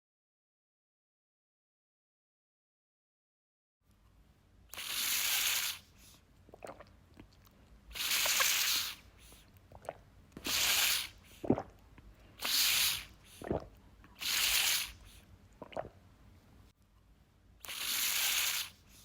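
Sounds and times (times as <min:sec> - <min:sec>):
sipping from sport bottle: 0:04.7 - 0:06.9, 0:07.9 - 0:11.8, 0:12.4 - 0:16.0, 0:17.6 - 0:19.0
gulping swallows: 0:06.5 - 0:16.0.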